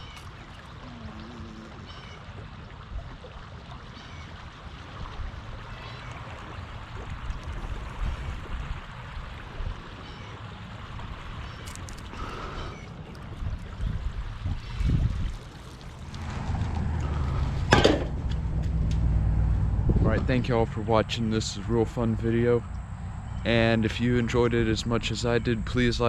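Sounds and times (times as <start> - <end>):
water rushing in sewer channel: 0.0 - 22.5
low rumble: 16.0 - 24.0.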